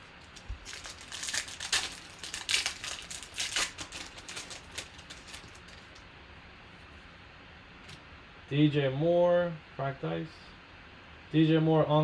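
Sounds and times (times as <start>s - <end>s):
trading cards rustling and snapping: 0.2s - 6.0s.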